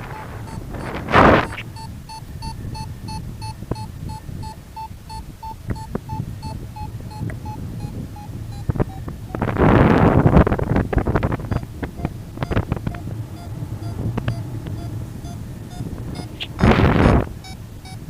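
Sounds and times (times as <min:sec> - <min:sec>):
low wind rumble: 0:00.0 - 0:18.0
electronic beeper beeping: 0:00.1 - 0:09.4, 0:11.4 - 0:18.0
sharp clicks: 0:03.5 - 0:09.6.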